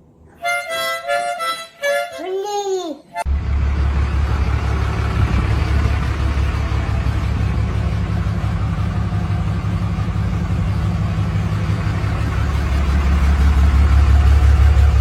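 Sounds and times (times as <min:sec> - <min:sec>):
loud low rumble: 0:03.3 - 0:15.0.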